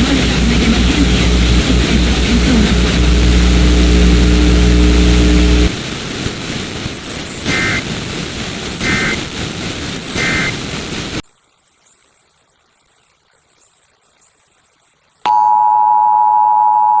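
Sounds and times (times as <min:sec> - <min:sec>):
buzzy two-tone digital bursts: 0:00.0 - 0:05.8, 0:07.4 - 0:08.0, 0:08.8 - 0:09.4, 0:10.1 - 0:11.0
loud low hum with tones: 0:00.0 - 0:05.9
radio hiss: 0:00.0 - 0:14.9.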